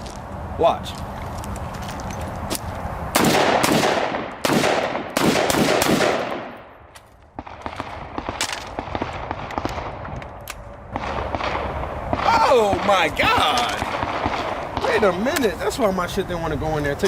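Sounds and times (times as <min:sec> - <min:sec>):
pistol gunshots with ringing echo: 0:03.2 - 0:06.8, 0:10.9 - 0:15.1.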